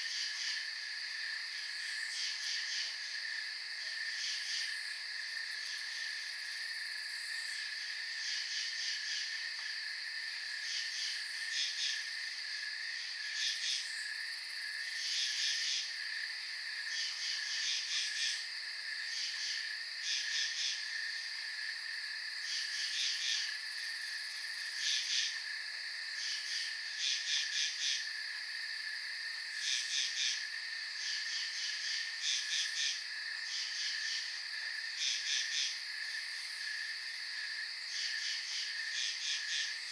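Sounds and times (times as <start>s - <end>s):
crickets trilling: 0.0s - 39.9s
insect chirping in bursts: 10.6s - 39.9s.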